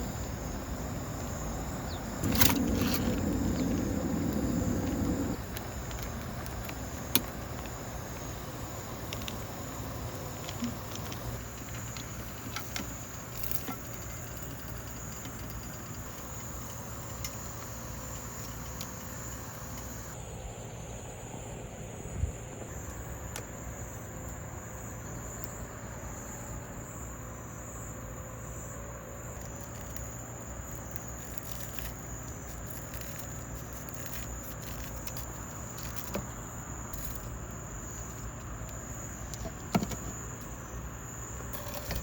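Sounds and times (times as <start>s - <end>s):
noisy rustle: 0.0s - 20.2s
crickets chirring: 0.0s - 42.0s
small clicks and knocks: 4.8s - 8.3s, 9.0s - 20.1s, 29.4s - 40.6s.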